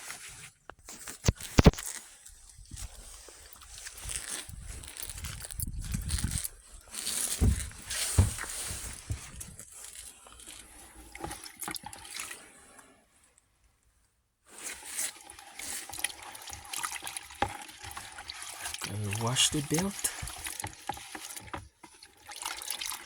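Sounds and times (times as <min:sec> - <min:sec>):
water trickling and splashing: 0:02.6 - 0:13.0, 0:14.5 - 0:23.0
knocks: 0:07.4 - 0:08.5.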